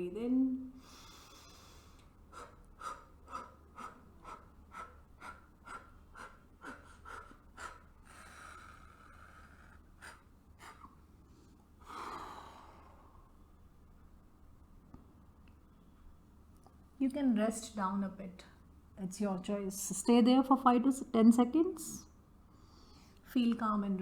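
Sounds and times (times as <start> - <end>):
woman long breath: 11.8 - 13.3.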